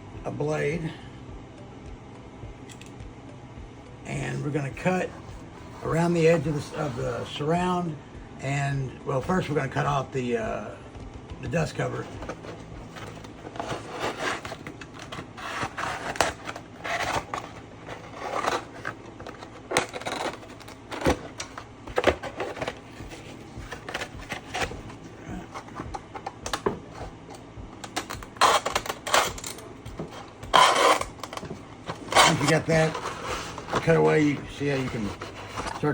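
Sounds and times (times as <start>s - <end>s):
blade scraping speaker cone: 31.9s - 35.9s.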